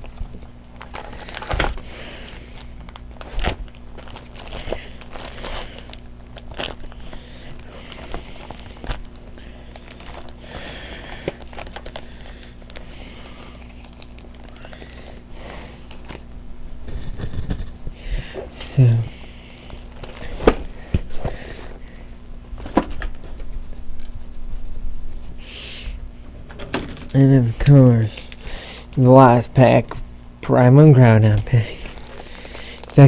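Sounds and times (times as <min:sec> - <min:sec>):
foil wrapper crinkling: 0:00.0 - 0:21.9, 0:22.6 - 0:25.5, 0:26.7 - 0:30.1, 0:30.8 - 0:33.0
steady low hum: 0:00.0 - 0:33.0
trading cards being handled: 0:26.6 - 0:30.0, 0:31.0 - 0:33.0.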